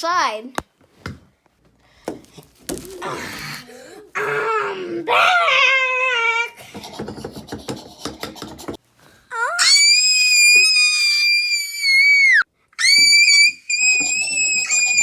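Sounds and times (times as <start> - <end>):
rustling: 2.1 - 3.7
high-pitched scream: 9.4 - 15.0.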